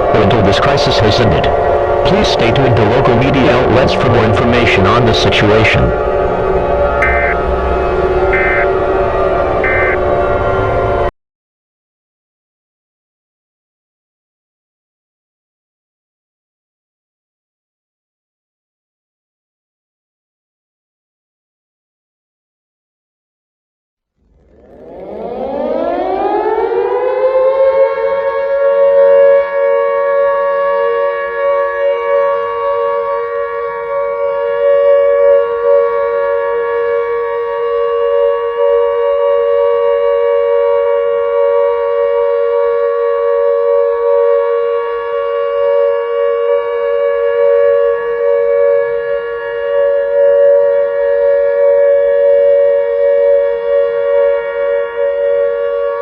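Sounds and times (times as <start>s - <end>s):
civil defense siren: 0.0s - 11.1s, 24.2s - 56.0s.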